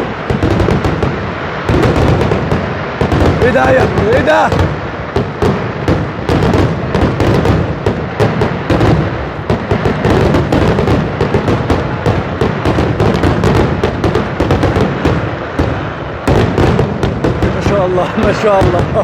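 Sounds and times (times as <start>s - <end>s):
fireworks bangs and crackle: 0.0s - 19.0s.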